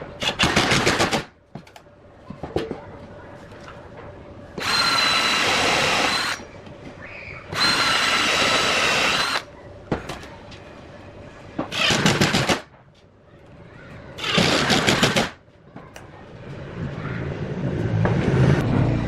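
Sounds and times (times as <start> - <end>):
drill rattling: 4.6 - 6.4, 7.5 - 9.4, 11.7 - 12.6, 14.2 - 15.3.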